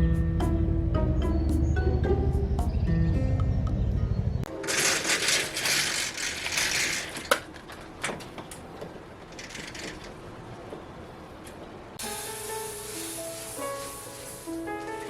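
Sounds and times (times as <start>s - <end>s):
rustling and scraping: 4.5s - 8.4s.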